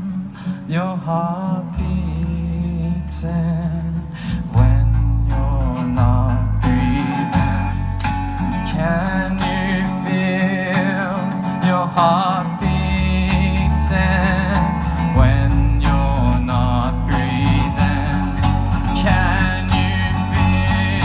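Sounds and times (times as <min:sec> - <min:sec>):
acoustic guitar strumming: 0:00.0 - 0:21.0
person singing: 0:08.4 - 0:21.0.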